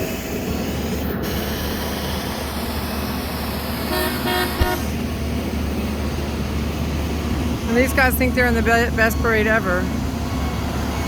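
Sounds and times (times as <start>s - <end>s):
steady rumble: 0.0s - 11.0s
machine horn toots: 3.8s - 5.0s.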